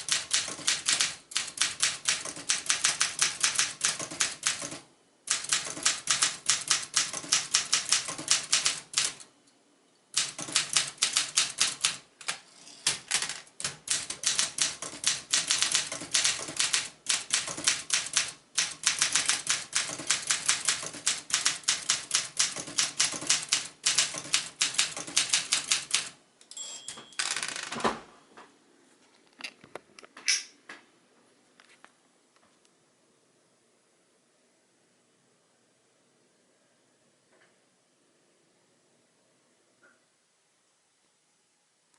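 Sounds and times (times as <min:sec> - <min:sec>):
typewriter key strikes: 0:00.0 - 0:09.2, 0:10.2 - 0:12.0, 0:12.9 - 0:26.1
typewriter carriage return: 0:10.2 - 0:26.1, 0:26.8 - 0:28.0
typewriter bell ding: 0:26.5 - 0:27.6.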